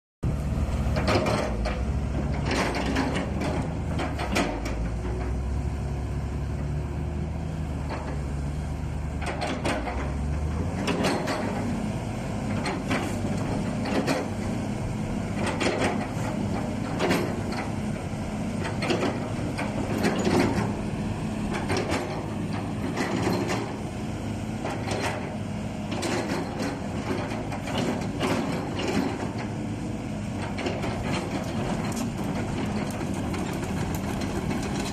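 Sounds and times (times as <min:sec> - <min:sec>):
excavator diesel engine running: 0:00.2 - 0:34.9
metallic clanks and knocks: 0:18.6 - 0:20.8, 0:21.5 - 0:23.8.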